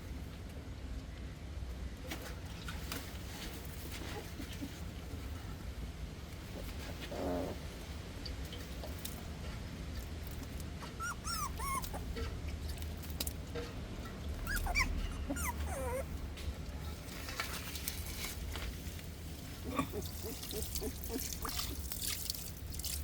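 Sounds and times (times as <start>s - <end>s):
puppies whining: 10.8s - 12.3s, 14.4s - 16.6s, 19.7s - 21.8s.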